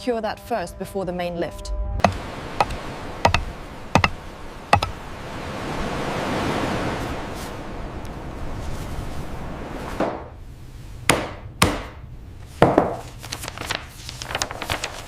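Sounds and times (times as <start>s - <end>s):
sharp knocks: 2.0s - 5.0s.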